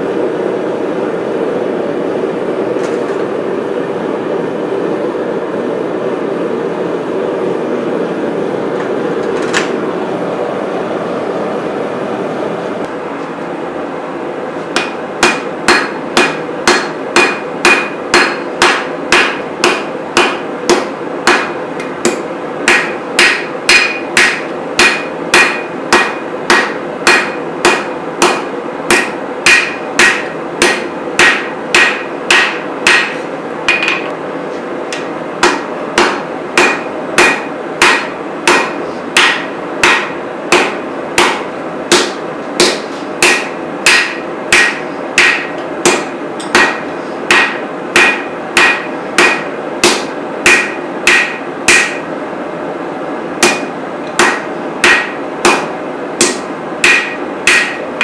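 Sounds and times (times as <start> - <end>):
hammer striking steel on anvil: 14.7 - 34.1, 34.9 - 52.1, 53.4 - 58.0.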